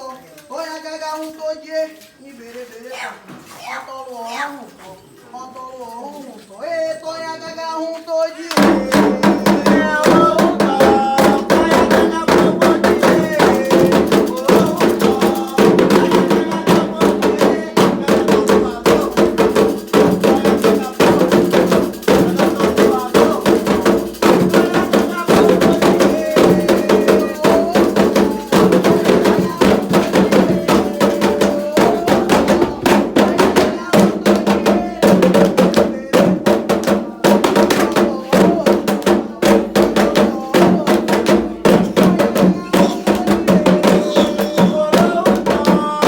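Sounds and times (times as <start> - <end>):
voices singing: 0.0 - 46.0
hand drums: 8.5 - 46.0
agogo bell: 8.7 - 35.7.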